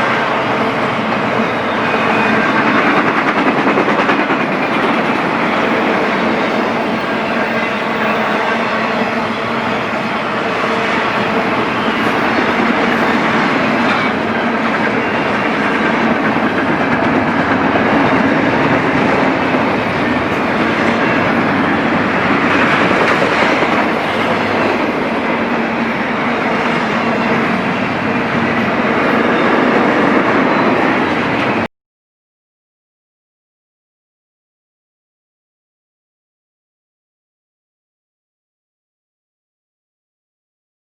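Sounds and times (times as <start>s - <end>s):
train wheels on rails: 0.0s - 31.7s.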